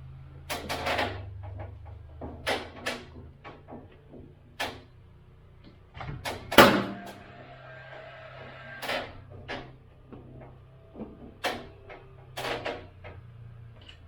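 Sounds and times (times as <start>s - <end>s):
knocks and clatter of boards: 6.0s - 7.3s, 9.2s - 13.2s
loud bang: 6.6s - 7.3s.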